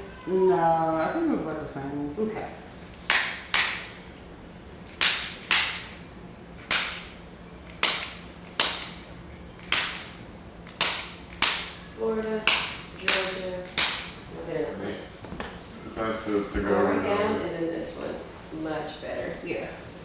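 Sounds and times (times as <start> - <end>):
sharp joint snaps: 3.1 - 4.0, 4.9 - 6.0, 6.6 - 11.9, 12.5 - 14.2.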